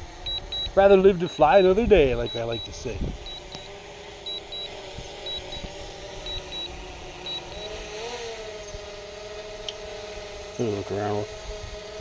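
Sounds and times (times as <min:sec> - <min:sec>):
drone propellers humming: 0:00.0 - 0:12.0
high double beeps: 0:00.3 - 0:00.8, 0:01.4 - 0:03.7, 0:04.3 - 0:05.7, 0:06.3 - 0:07.8.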